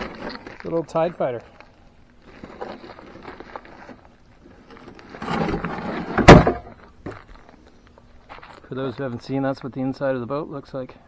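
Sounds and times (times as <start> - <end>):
scraping shuffle: 0.0 - 9.0
sharp loud thump: 6.2 - 6.7.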